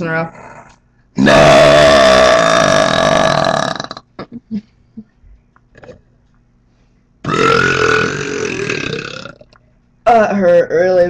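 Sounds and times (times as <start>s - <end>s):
long loud burp: 1.2s - 4.1s, 7.2s - 9.6s.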